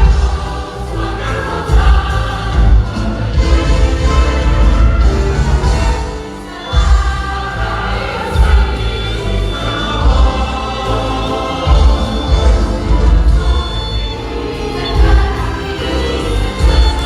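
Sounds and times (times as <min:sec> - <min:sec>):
music with strong bass beat: 0:00.0 - 0:06.1
choir singing: 0:00.0 - 0:17.0.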